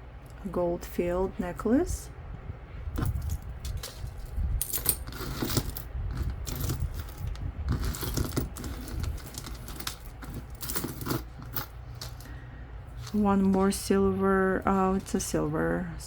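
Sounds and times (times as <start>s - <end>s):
low handling rumble: 0.0s - 16.0s
metal jewelry clinking: 3.0s - 12.3s.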